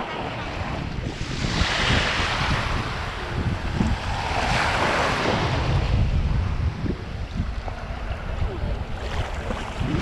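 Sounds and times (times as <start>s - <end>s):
wind rumbling on microphone: 0.0s - 10.0s
shallow seawater sloshing: 8.9s - 10.0s.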